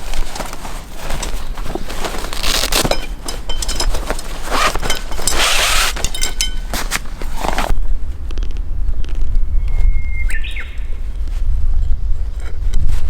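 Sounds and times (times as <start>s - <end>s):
rustling of camping gear: 0.0s - 9.3s, 10.4s - 13.0s
knocks and light clinks: 0.1s - 7.7s.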